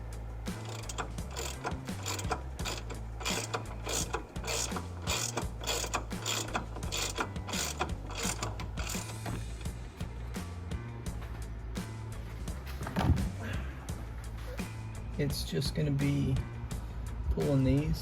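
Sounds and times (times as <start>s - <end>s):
background music with bass: 0.0s - 18.0s
ratchet wrench clicking: 0.6s - 9.7s.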